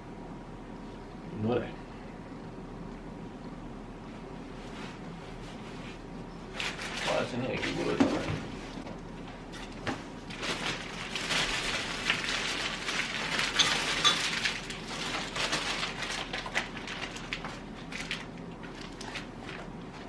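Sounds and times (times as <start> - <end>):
plastic packaging crinkling: 6.5 - 8.0, 9.7 - 20.0.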